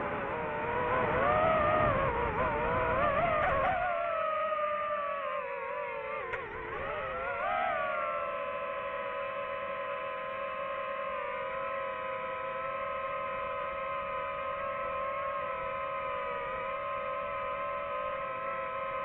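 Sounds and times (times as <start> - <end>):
drone propellers whining: 0.0 - 19.0.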